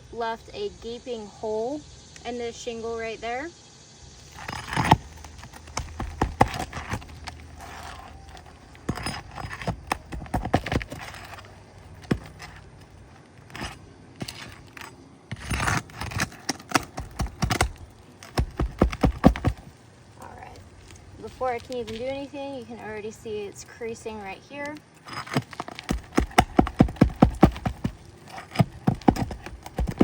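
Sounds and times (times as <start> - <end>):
metal tool scraping shingles: 4.2 - 19.7, 25.0 - 30.0.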